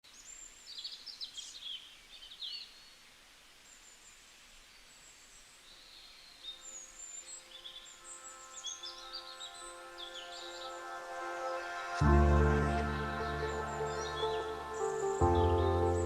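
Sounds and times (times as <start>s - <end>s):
faint outdoor hiss: 0.0s - 16.0s
songbird chirps and trills: 0.0s - 16.0s
soft music: 6.6s - 16.0s.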